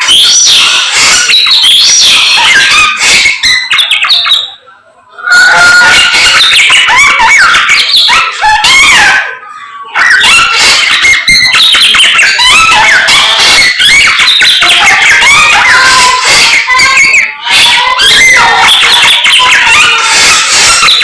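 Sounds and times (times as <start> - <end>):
bird singing whistles and chatters: 0.0 - 4.6, 9.9 - 21.0.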